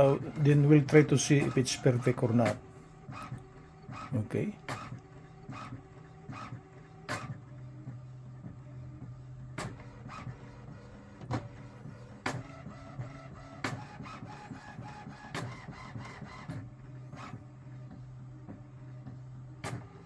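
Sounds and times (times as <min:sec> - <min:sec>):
printer mechanism whirring: 0:00.0 - 0:20.0
printer sharp click: 0:00.1 - 0:03.3, 0:19.6 - 0:19.9.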